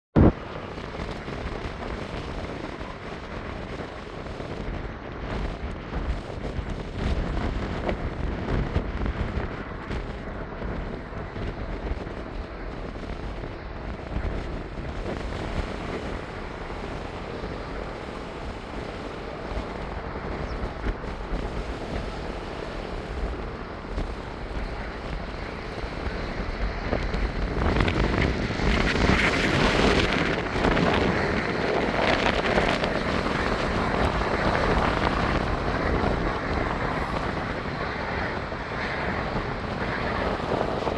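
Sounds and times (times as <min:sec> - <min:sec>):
steady rumble: 0:00.2 - 0:40.9
wind gusting on microphone: 0:00.2 - 0:40.9.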